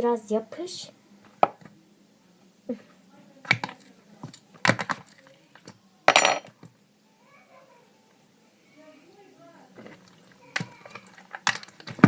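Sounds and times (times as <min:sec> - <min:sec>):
plastic containers clicking and clattering: 0:03.5 - 0:06.5, 0:09.8 - 0:12.0.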